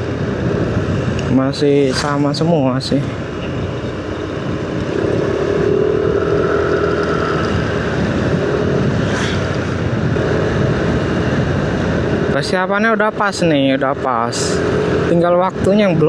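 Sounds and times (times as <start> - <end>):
humming vehicle tone: 0.0 - 12.3
motorcycle engine and road noise: 0.0 - 16.0.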